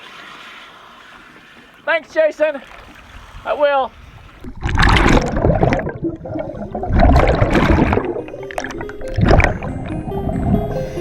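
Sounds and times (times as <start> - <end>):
water gurgling and bubbling: 4.4 - 11.0
soft music with held notes: 8.0 - 11.0.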